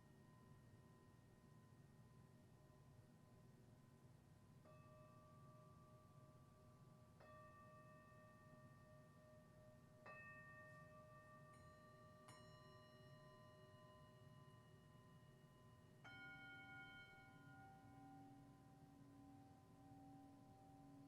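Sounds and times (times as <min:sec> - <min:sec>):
singing bowls ringing: 0:10.1 - 0:21.0.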